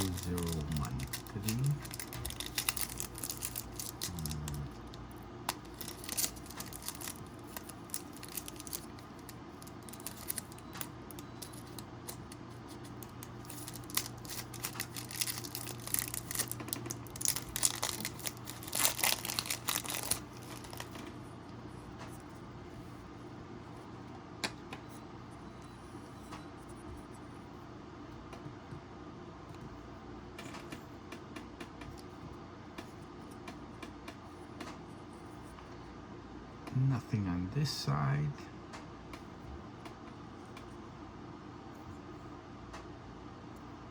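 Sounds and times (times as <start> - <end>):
plastic packaging crinkling: 0.0 - 21.1
faint steady hum: 0.0 - 43.9.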